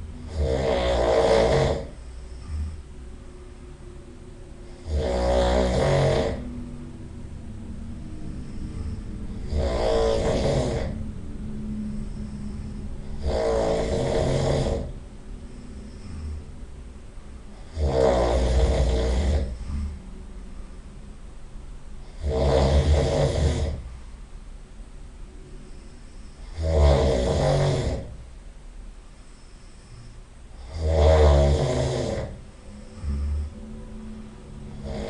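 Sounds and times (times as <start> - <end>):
person snoring loudly: 0.0 - 2.8, 4.6 - 6.6, 8.2 - 11.2, 11.8 - 16.6, 17.5 - 20.0, 22.0 - 23.9, 25.6 - 28.2, 29.3 - 35.0
quiet breathing: 0.0 - 35.0.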